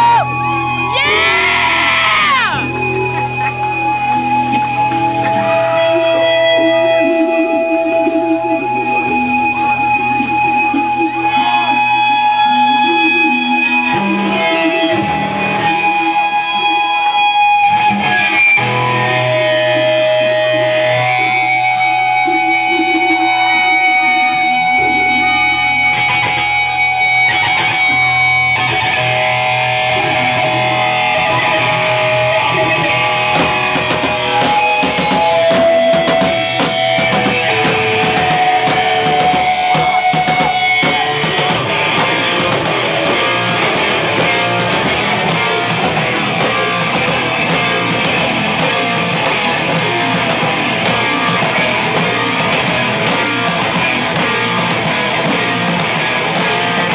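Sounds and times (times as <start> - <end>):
loud rock music: 0.0 - 56.9
drums hitting: 33.2 - 56.9.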